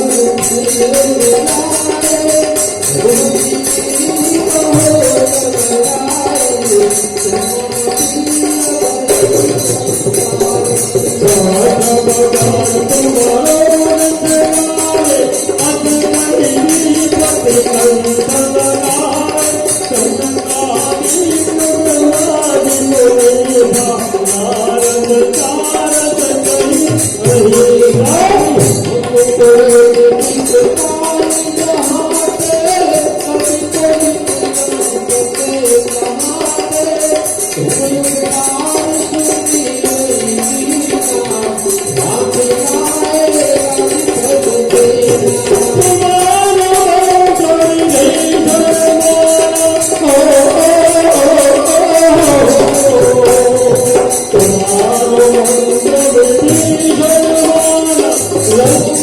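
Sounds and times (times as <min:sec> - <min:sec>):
jingling hand percussion: 0:00.0 - 0:59.0.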